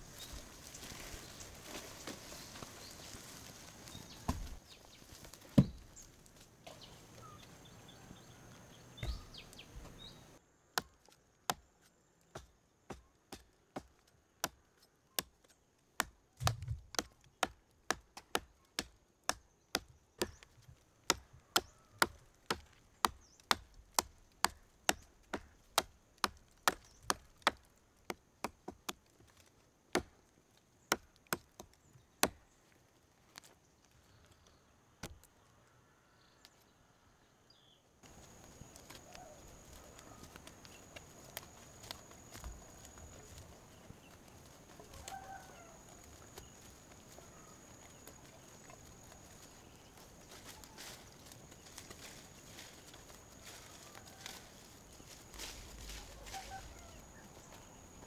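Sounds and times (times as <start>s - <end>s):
wood chopping strikes: 3.9s - 4.6s, 5.3s - 7.4s, 8.9s - 11.6s, 16.0s - 20.4s, 21.1s - 29.0s, 29.9s - 30.2s, 30.9s - 32.4s.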